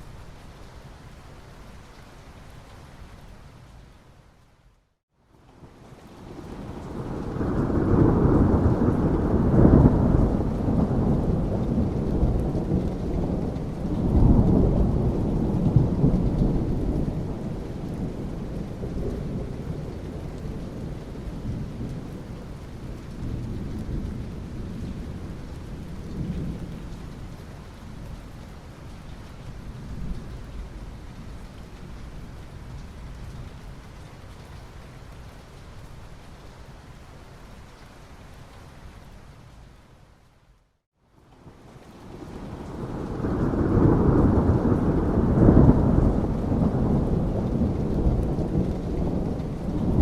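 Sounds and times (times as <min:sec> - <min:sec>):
steady rain: 0:00.0 - 0:50.0
thunder rumbling: 0:06.2 - 0:27.4, 0:42.0 - 0:50.0.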